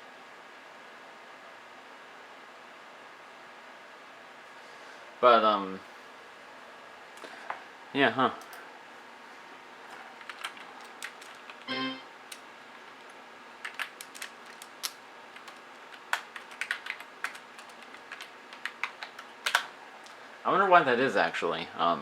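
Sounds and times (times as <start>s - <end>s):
keyboard and mouse clicking: 10.2s - 11.7s, 13.0s - 20.2s
brief pitched tone: 11.7s - 12.1s.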